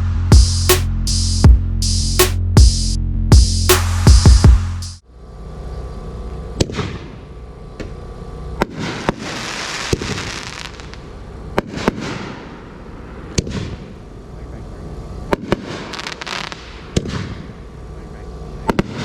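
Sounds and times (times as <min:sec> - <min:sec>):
intro music: 0:00.0 - 0:05.0.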